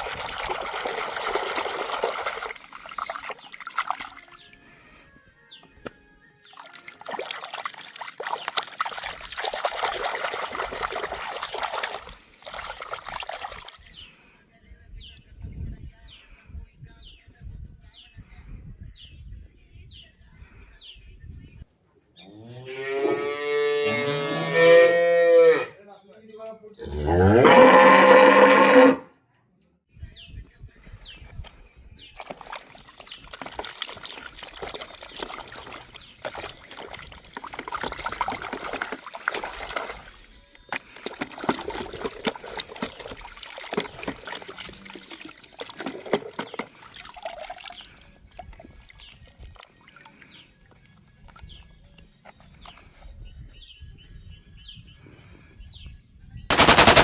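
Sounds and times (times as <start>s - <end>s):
water trickling and splashing: 0.0s - 5.0s, 6.4s - 14.4s, 32.1s - 53.0s
cow mooing: 22.2s - 25.8s, 26.8s - 29.1s
machine-gun fire: 56.5s - 57.0s.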